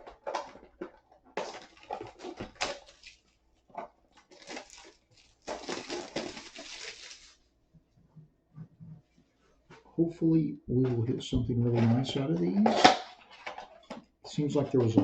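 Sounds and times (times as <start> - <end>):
cardboard packaging tearing: 1.4 - 3.4, 4.2 - 7.4.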